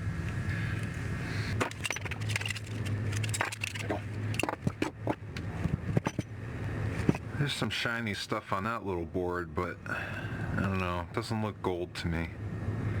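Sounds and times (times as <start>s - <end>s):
low steady hum: 0.0s - 13.0s
clicks and scrapes of handled parts: 0.3s - 6.3s.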